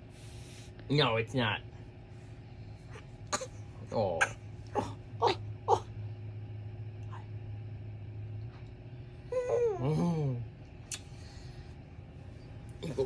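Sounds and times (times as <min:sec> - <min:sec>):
steady low hum: 0:00.0 - 0:13.0
baby babbling: 0:09.3 - 0:09.9.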